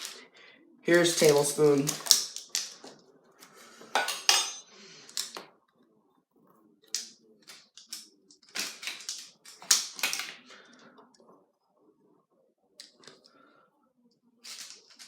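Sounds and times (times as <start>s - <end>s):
spoon clinking against a mug: 4.0s - 4.6s.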